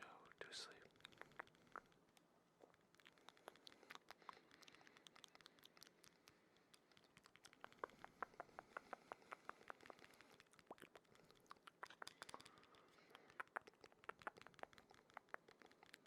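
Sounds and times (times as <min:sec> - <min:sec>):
small wet clicks and taps: 0:00.4 - 0:16.0.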